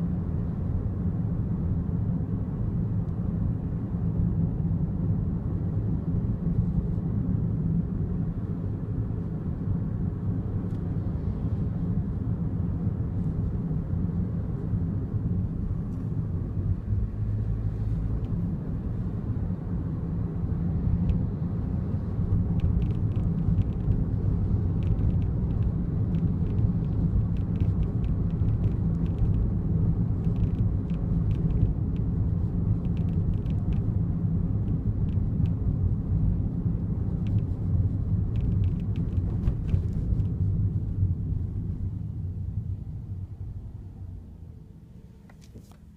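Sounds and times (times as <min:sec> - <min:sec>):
low road rumble: 0:00.0 - 0:45.9.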